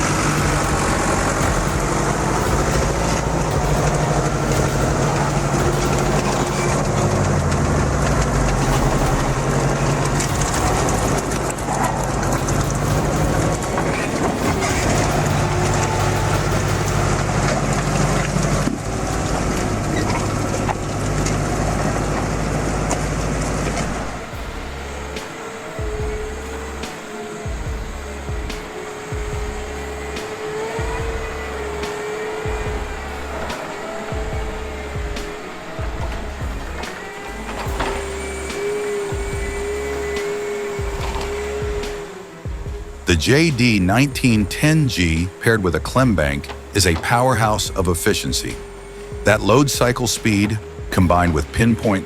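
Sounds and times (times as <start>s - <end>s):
engine clatter: 0.0s - 52.0s
heavy vehicle engine under load: 0.0s - 52.0s.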